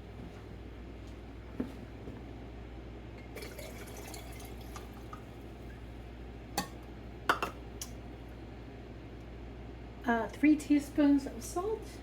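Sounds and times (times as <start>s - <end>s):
water pouring into container: 3.3s - 5.4s.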